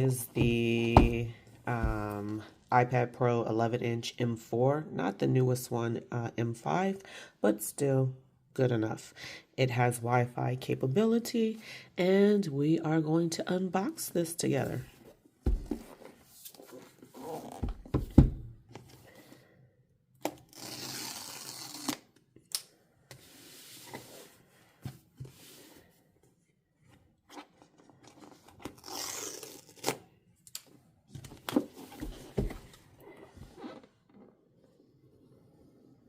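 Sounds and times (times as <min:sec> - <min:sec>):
box knocks and rustles: 0:15.4 - 0:16.0
packaging tearing: 0:20.3 - 0:22.1, 0:28.2 - 0:30.1.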